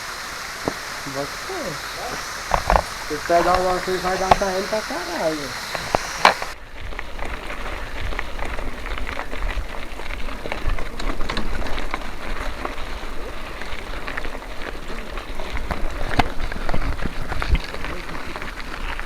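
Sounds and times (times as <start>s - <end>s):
bike tyres crackling on dirt: 0.0s - 19.0s
wind rumble on microphone: 5.6s - 19.0s.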